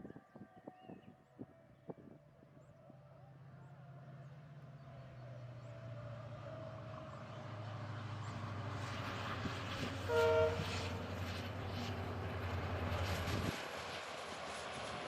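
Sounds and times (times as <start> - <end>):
locomotive engine rumble: 3.2 - 15.0
train horn blast: 9.6 - 12.1.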